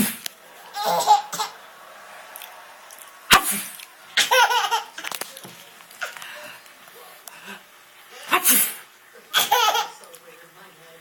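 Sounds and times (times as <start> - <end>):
small child giggling: 4.2 - 5.0.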